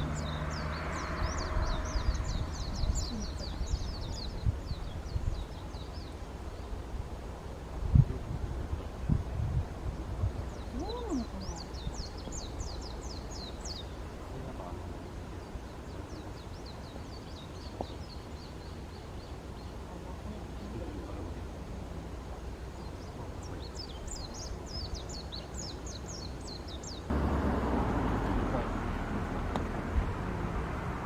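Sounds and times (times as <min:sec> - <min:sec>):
songbird singing: 0:00.0 - 0:31.0
steady low rumble: 0:27.1 - 0:31.0.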